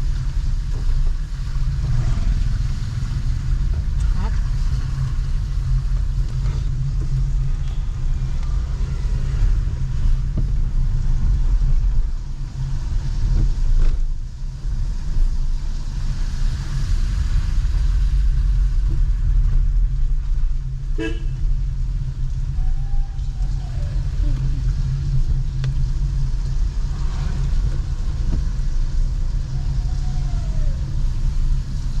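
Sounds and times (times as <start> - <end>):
heavy rain hiss: 0.0 - 32.0
vehicle engines running: 0.0 - 32.0
car horn toot: 21.0 - 21.4.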